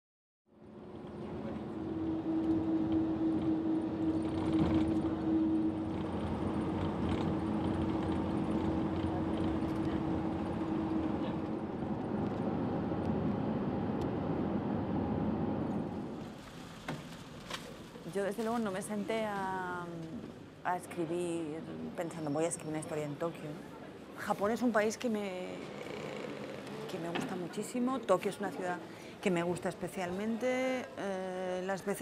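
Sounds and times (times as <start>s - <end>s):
constant hum: 0.5s - 32.0s
road traffic rushing: 0.6s - 16.4s.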